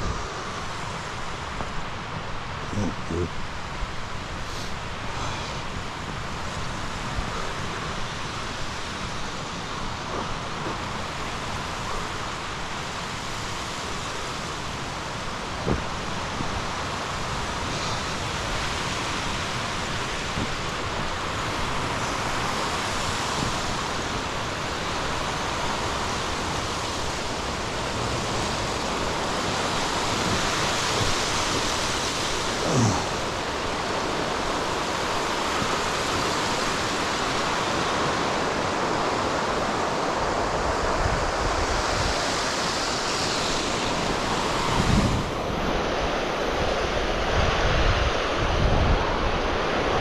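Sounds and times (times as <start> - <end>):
lake surf: 0.0 - 50.0
wind: 0.0 - 50.0.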